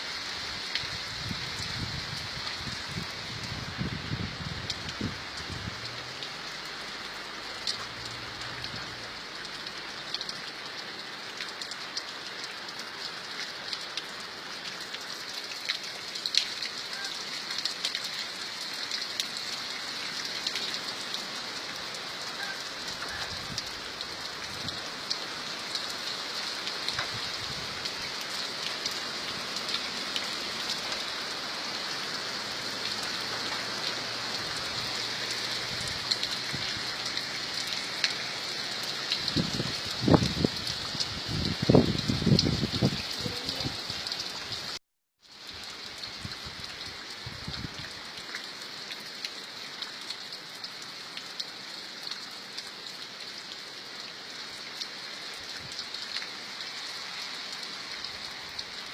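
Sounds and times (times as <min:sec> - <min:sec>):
steady rainfall hiss: 0:00.0 - 0:58.9
raindrops ticking on surface: 0:00.6 - 0:58.9.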